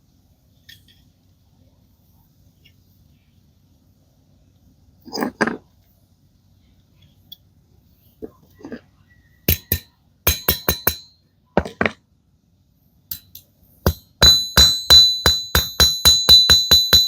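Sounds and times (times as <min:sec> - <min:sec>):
metal ringing strikes: 0:09.5 - 0:11.2, 0:13.9 - 0:17.0.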